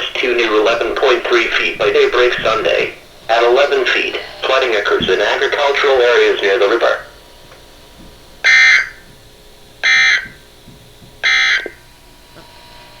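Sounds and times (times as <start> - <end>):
digital data tone bursts: 0.0 - 7.4, 8.4 - 9.1, 9.8 - 10.5, 11.2 - 11.8.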